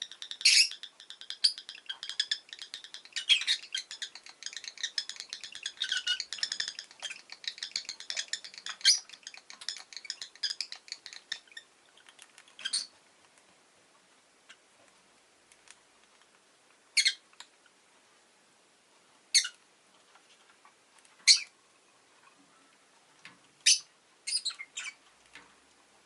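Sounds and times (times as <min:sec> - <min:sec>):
lovebirds chattering: 0:00.0 - 0:12.9, 0:21.2 - 0:21.5, 0:23.6 - 0:25.0.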